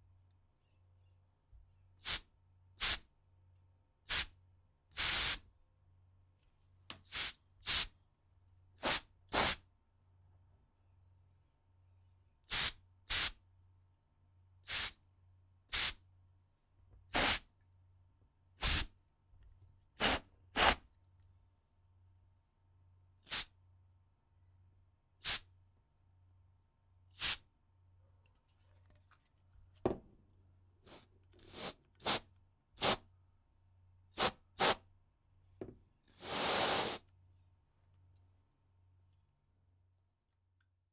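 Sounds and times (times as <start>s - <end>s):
compressed air can hissing: 8.8s - 9.6s, 14.7s - 14.9s, 20.0s - 20.8s, 27.2s - 27.4s, 30.9s - 32.2s, 32.8s - 33.0s, 34.2s - 34.8s, 36.2s - 37.0s.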